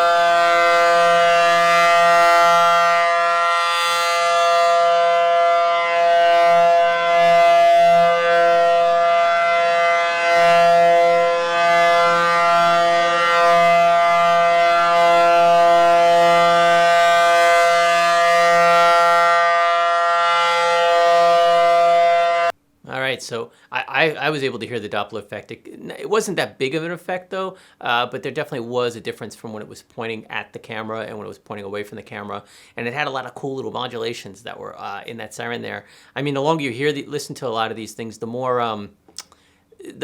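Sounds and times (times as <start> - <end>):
air raid siren wailing: 0.0 - 22.6.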